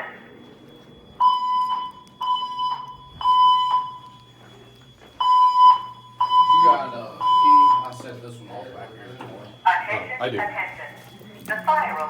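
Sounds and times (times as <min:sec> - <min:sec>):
evacuation tone beeps: 0:05.2 - 0:08.0.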